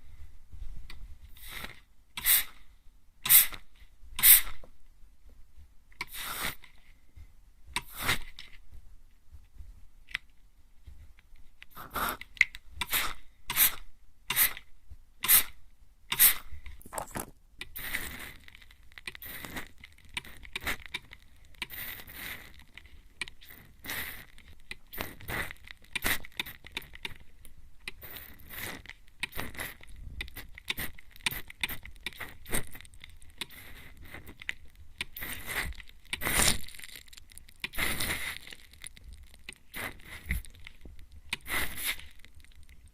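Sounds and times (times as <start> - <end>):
spray bottle spritzing: 2.2 - 2.5, 3.3 - 3.6, 4.2 - 4.6, 12.9 - 14.6, 15.2 - 15.5, 16.1 - 16.4, 35.1 - 36.8, 41.3 - 42.2.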